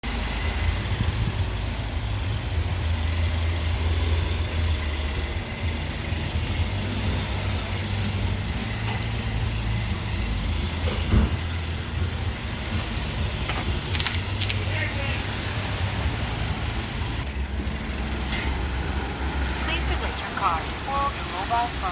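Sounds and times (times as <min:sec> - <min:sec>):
car engine idling: 0:00.0 - 0:21.9.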